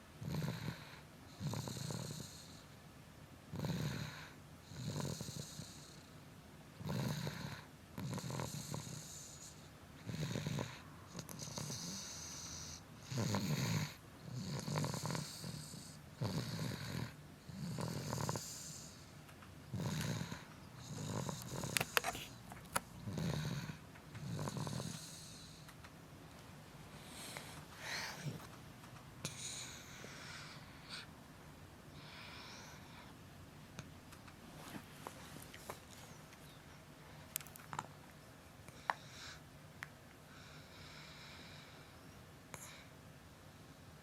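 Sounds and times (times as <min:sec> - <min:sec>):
child snoring loudly: 0:00.2 - 0:02.5, 0:03.5 - 0:05.8, 0:06.8 - 0:09.1, 0:10.0 - 0:18.9, 0:19.7 - 0:21.8, 0:23.0 - 0:25.4.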